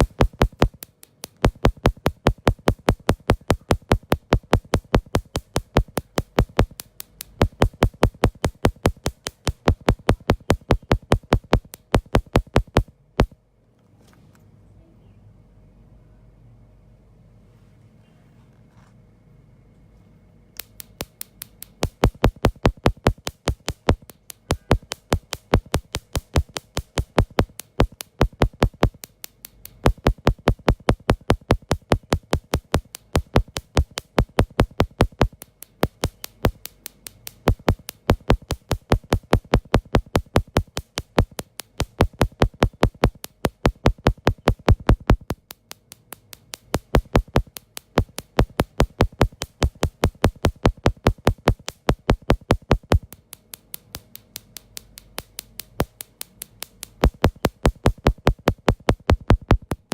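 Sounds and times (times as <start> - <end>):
electronic music with drum-machine beat: 0.0 - 0.8, 1.4 - 6.8, 7.4 - 13.4, 21.8 - 29.0, 29.8 - 36.8, 37.4 - 45.4, 46.7 - 53.1, 57.0 - 59.9.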